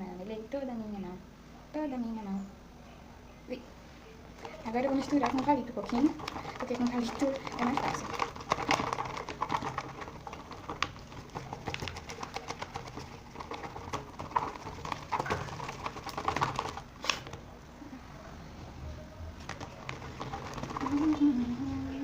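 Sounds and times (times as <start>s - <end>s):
slime stirred with stick: 4.4s - 17.5s, 19.4s - 21.8s.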